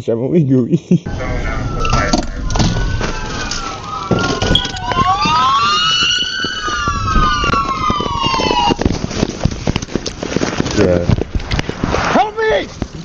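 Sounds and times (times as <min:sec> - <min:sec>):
police siren wailing: 0:01.1 - 0:09.0.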